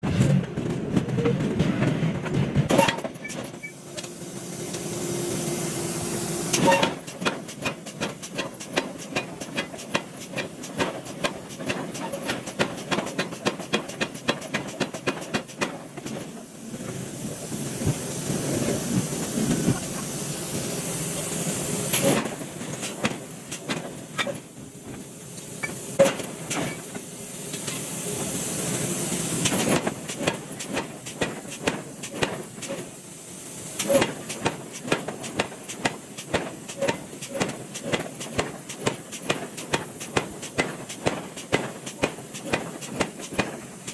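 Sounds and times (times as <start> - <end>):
loud steady hissing: 10.1 - 43.9.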